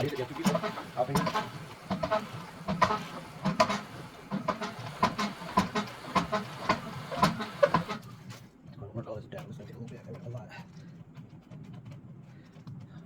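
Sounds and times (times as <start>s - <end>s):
wire spool clicking and clacking: 0.0s - 8.3s.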